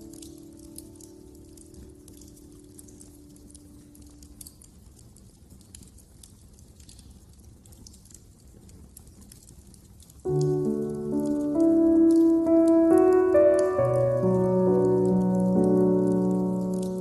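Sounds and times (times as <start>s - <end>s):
piano music: 0.0s - 4.4s, 10.3s - 17.0s
wood fire crackling and popping: 0.0s - 17.0s.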